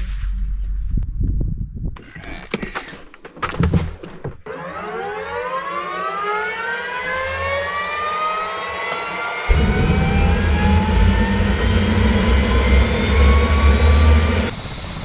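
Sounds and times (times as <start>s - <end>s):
helicopter turbine whine: 4.5s - 15.0s.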